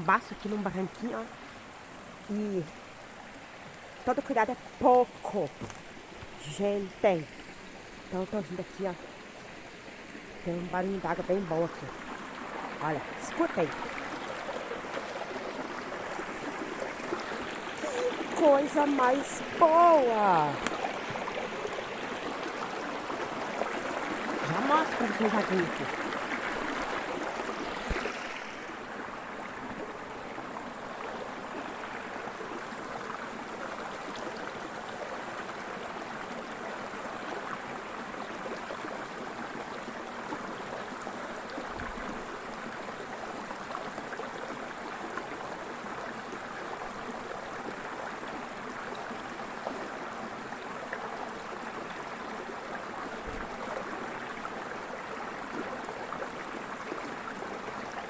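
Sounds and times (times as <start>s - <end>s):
creek water babbling: 0.0s - 58.0s.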